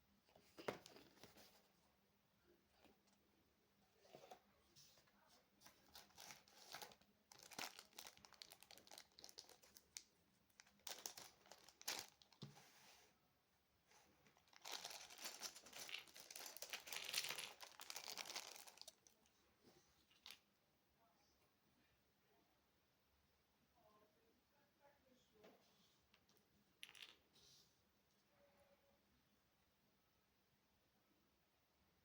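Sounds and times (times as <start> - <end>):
packaging crinkling: 5.8 - 12.4, 14.4 - 19.2.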